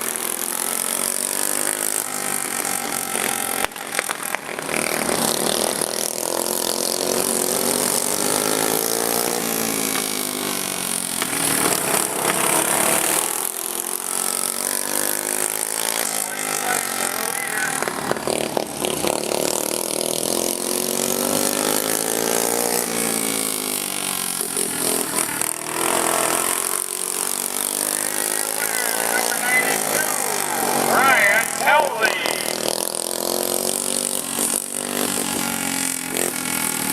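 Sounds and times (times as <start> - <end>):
racing lawn mower engines: 0.0 - 36.9.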